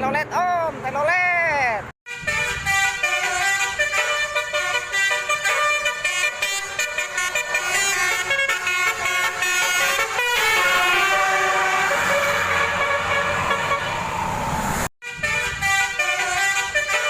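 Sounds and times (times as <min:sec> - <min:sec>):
multi-tone air horn melody: 0:02.1 - 0:14.1, 0:15.0 - 0:17.0
rushing noise: 0:10.5 - 0:14.9.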